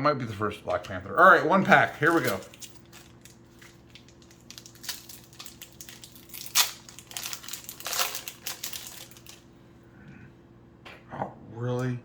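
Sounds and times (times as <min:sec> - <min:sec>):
plastic wrapper tearing and crinkling: 0:01.7 - 0:09.5.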